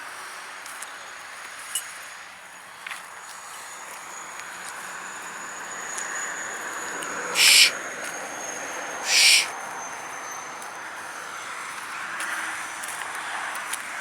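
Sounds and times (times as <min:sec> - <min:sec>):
short bursts of hiss: 0:07.4 - 0:07.7, 0:09.1 - 0:09.5.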